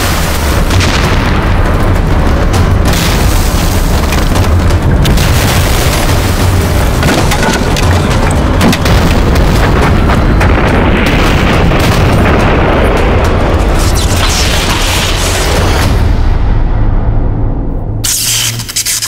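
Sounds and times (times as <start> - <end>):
explosions with low rumble: 0.0 - 18.2
film score: 0.0 - 19.0.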